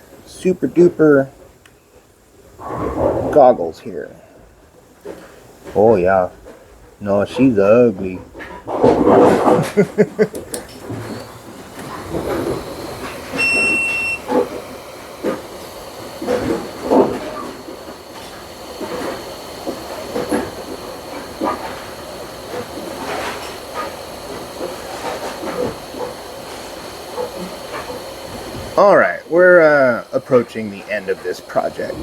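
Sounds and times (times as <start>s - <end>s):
hot-air station hiss and whine: 0.0s - 32.0s
short electronic beep: 13.4s - 14.2s.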